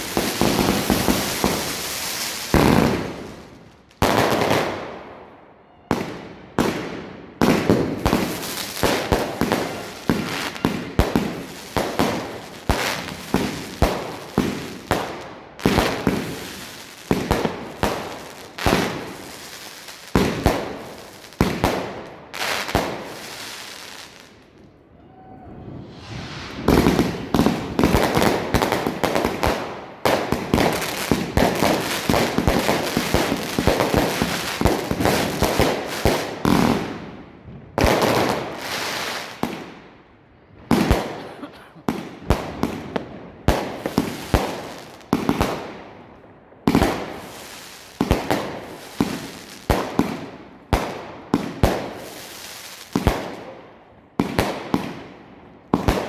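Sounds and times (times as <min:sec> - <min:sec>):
firework shots and bursts: 0:05.9 - 0:24.2, 0:25.7 - 0:37.1, 0:54.2 - 0:56.0.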